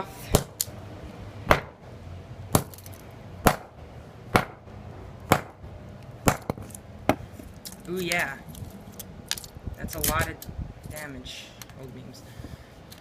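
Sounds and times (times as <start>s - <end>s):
sledgehammer striking phone: 1.5s - 1.8s, 2.5s - 2.8s, 3.4s - 3.7s, 4.4s - 4.6s, 5.3s - 5.6s, 6.2s - 7.2s.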